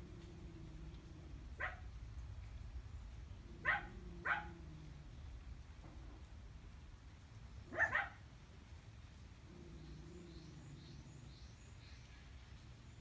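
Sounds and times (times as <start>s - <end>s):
dog barking: 1.6s - 1.9s, 3.6s - 4.6s, 7.7s - 8.2s.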